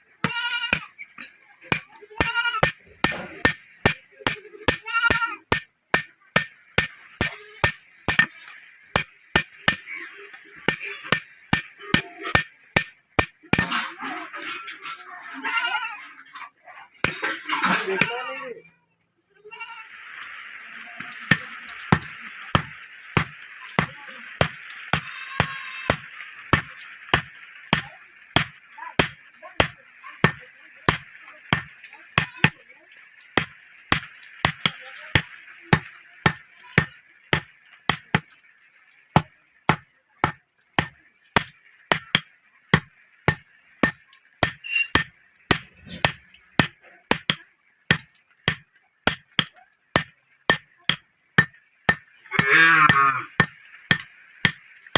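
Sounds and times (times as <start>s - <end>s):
hammer striking metal: 5.5s - 8.4s, 42.8s - 52.0s, 53.4s - 54.6s.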